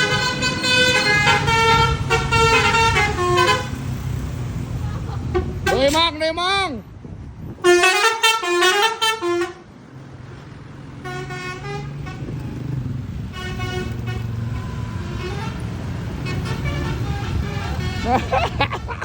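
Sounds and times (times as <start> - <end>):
musical bus horn tune: 0.0 - 4.0, 7.6 - 9.7, 11.0 - 12.4, 13.2 - 18.6.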